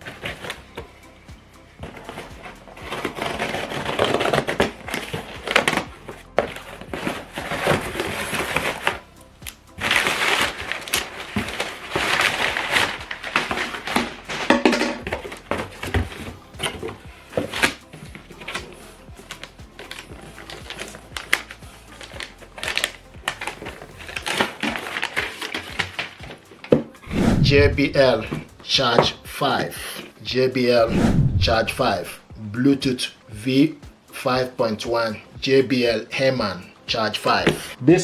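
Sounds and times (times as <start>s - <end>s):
background music: 0.0s - 38.0s
packaging crinkling and rustling: 20.5s - 26.9s.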